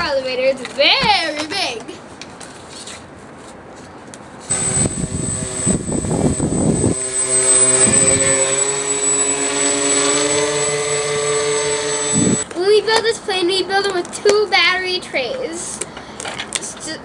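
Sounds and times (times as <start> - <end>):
rc plane motor whining: 4.5 - 12.5.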